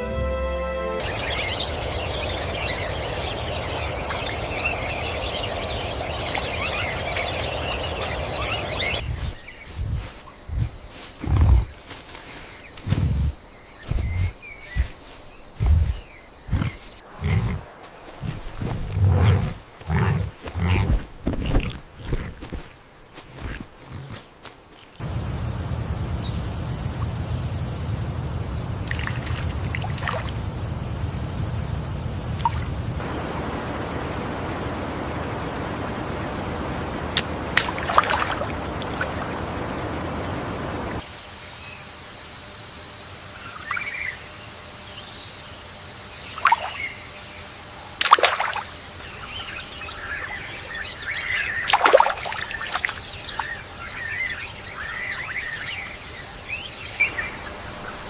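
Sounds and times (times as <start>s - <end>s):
high whine: 0.0s - 9.0s
running water rushing: 1.0s - 9.0s, 25.0s - 41.0s, 48.0s - 48.7s, 49.9s - 53.6s
bird chirps: 1.0s - 11.6s, 25.0s - 41.0s.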